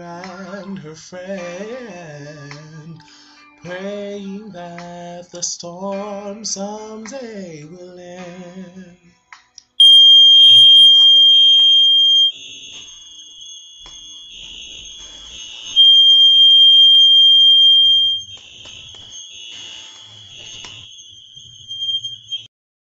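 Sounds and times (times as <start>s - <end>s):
high-pitched fire alarm tone: 9.6s - 22.5s.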